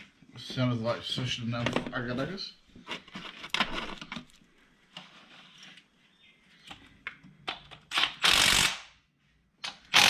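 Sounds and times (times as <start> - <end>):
power drill burst: 7.9 - 8.9.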